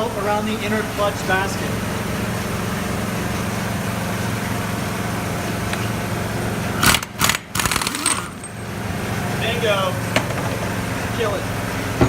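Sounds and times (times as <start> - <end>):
motor humming: 0.0 - 12.0
impact wrench burst: 6.8 - 8.6.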